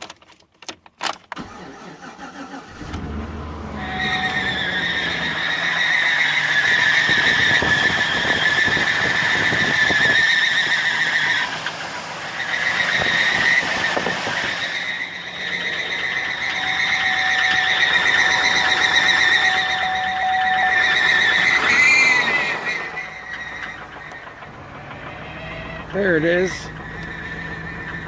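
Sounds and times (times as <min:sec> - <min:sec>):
engine running: 0:01.4 - 0:28.0
high-pitched squeal: 0:01.4 - 0:28.0
rapid engine knocking: 0:23.4 - 0:28.0.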